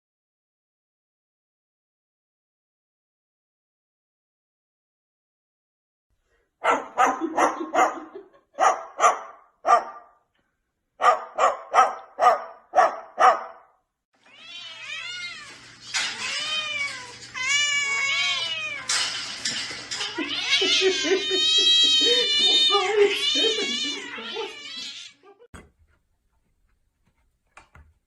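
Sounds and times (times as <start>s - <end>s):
cat meowing: 14.2s - 19.0s, 19.9s - 25.4s.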